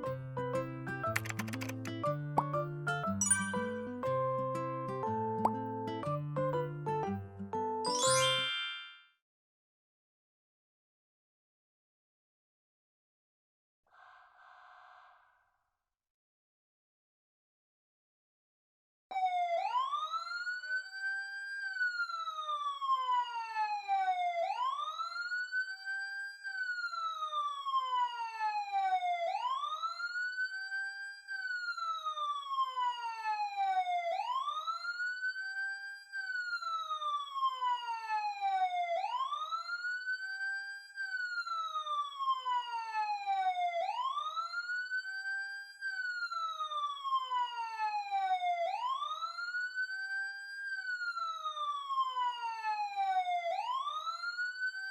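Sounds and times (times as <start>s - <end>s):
wailing siren: 19.1s - 54.9s.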